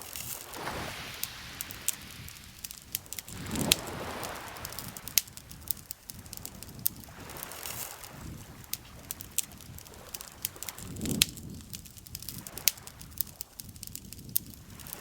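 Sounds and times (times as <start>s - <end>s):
campfire crackling and popping: 0.0s - 15.0s.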